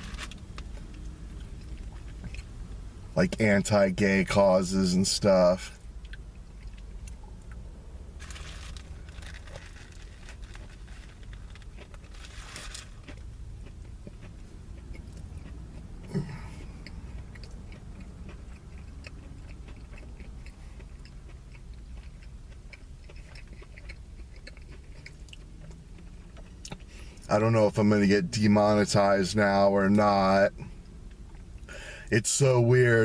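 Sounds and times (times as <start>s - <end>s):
chewing with wet clicks: 0.0s - 4.2s, 5.6s - 7.7s, 8.8s - 12.3s, 12.9s - 27.8s, 30.6s - 31.7s
crunchy bites: 8.2s - 27.0s.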